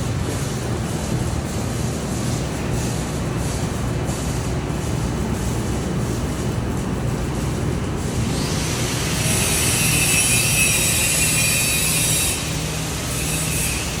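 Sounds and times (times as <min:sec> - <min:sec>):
steady low hum: 0:00.0 - 0:14.0
welding arc hissing: 0:00.0 - 0:14.0.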